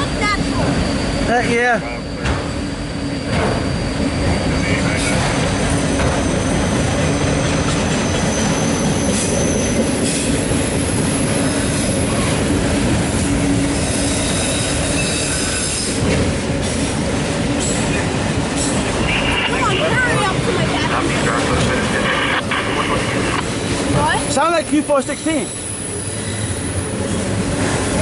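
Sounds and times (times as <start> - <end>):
high wheel squeals: 0.0 - 12.5, 13.1 - 16.1, 24.2 - 28.0
train wheels rumbling on rails: 0.0 - 28.0.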